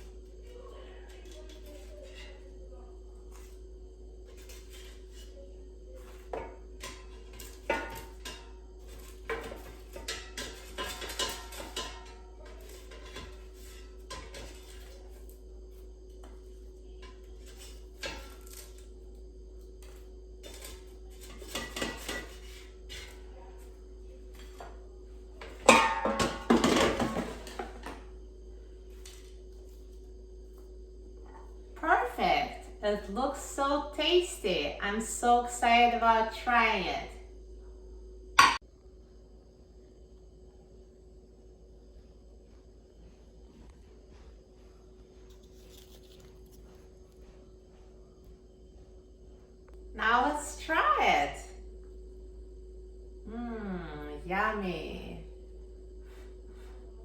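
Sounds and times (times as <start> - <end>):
faint steady hum: 0.0 - 57.0
utensils and dishes clinking: 4.3 - 15.3, 19.8 - 24.8, 25.4 - 28.0.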